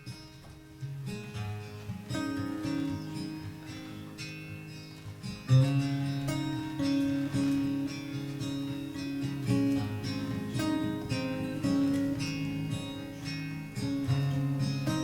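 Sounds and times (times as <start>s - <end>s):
strummed acoustic guitar: 0.0s - 15.0s.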